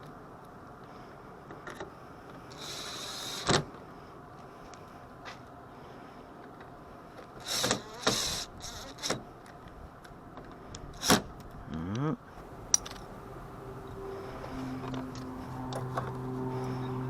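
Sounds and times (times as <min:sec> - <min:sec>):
clunks and scrapes of parts: 0:13.9 - 0:16.9.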